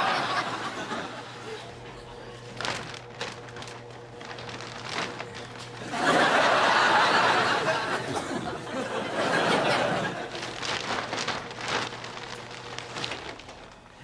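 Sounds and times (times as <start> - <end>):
studio audience laughing: 0.0 - 1.9, 5.8 - 10.5.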